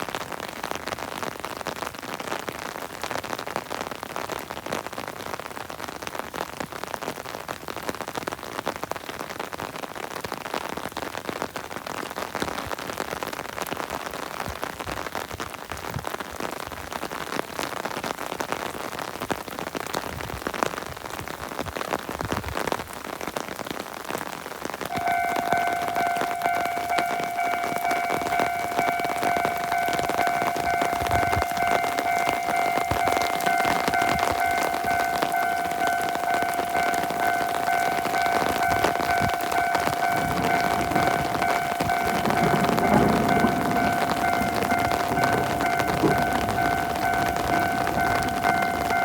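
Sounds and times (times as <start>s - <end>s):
steady rain falling: 0.0s - 49.0s
level-crossing alarm ringing: 24.9s - 49.0s.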